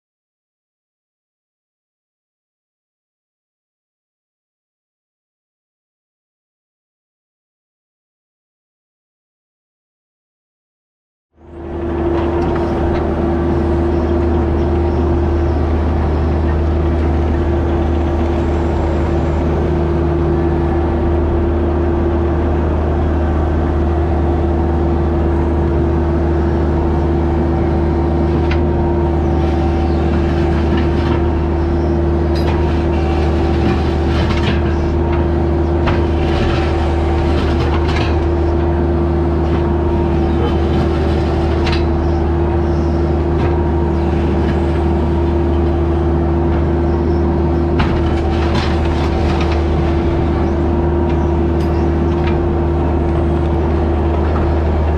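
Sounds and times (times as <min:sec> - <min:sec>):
construction equipment engine running: 0:11.4 - 0:54.9.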